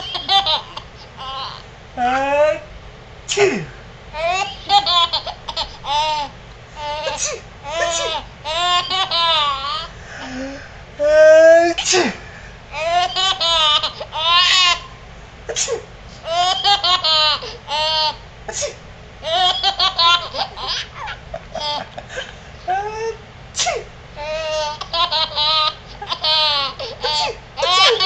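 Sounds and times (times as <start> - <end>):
small child laughing: 0.0 - 1.6, 4.2 - 10.0, 12.7 - 14.9, 16.2 - 18.2, 19.2 - 22.3, 23.7 - 28.0.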